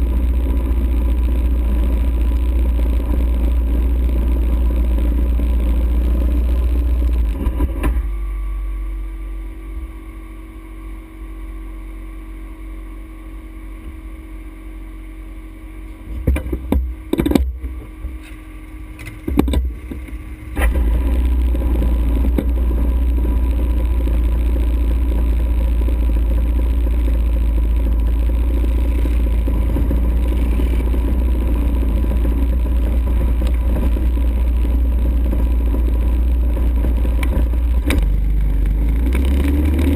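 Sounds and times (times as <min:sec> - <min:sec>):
atv engine rumbling: 0:00.0 - 0:39.9.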